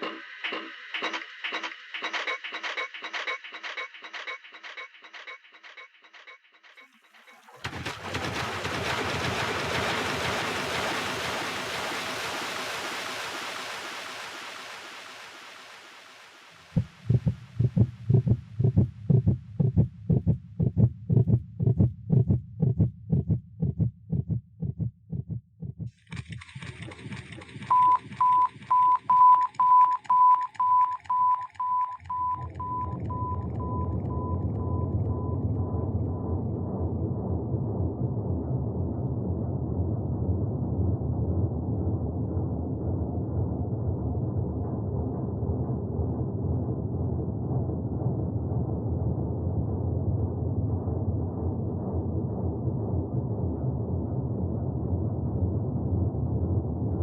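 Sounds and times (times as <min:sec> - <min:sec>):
low rumble: 0:16.6 - 0:25.9, 0:32.1 - 0:57.0
electronic beep repeating: 0:27.7 - 0:35.8.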